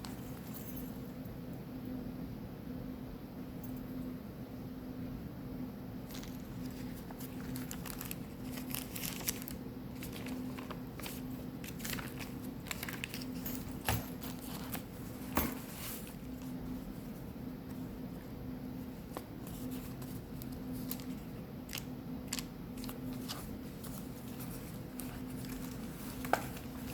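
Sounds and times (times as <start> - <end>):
faint hum: 0.0 - 26.9
paper pages rustling: 6.1 - 17.9, 18.9 - 26.9.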